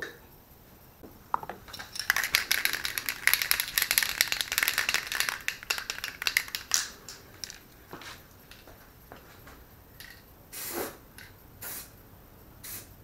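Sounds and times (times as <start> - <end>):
spray paint can rattling: 1.6 - 7.7.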